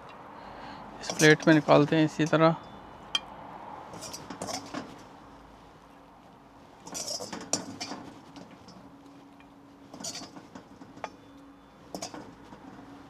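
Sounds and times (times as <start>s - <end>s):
utensil scraping and clinking on pan: 1.0s - 3.3s, 3.9s - 5.0s, 6.8s - 8.8s, 9.4s - 12.9s.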